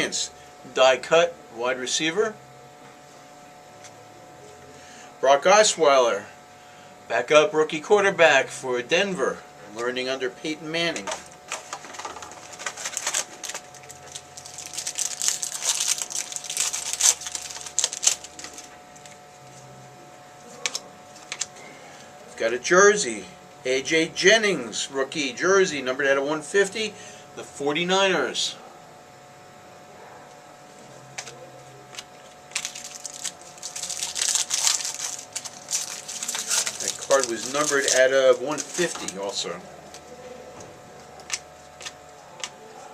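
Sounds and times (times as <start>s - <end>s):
foil wrappers crinkling: 10.8s - 19.6s, 20.4s - 21.8s, 31.1s - 42.9s
cards being handled: 10.9s - 19.7s, 20.4s - 21.7s, 31.1s - 40.2s, 40.9s - 42.6s.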